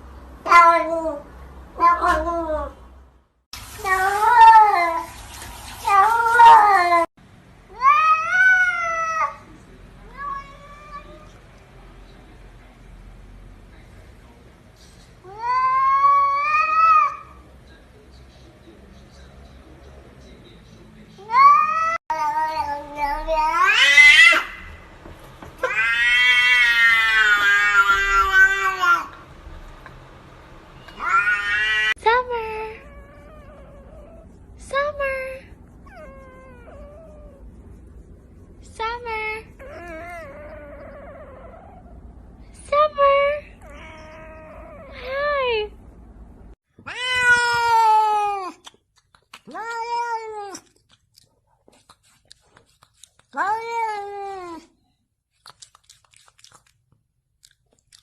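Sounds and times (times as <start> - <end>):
cat meowing: 1.8 - 2.8, 21.2 - 24.7, 25.6 - 29.2, 30.8 - 32.0, 43.6 - 45.0, 46.8 - 48.6.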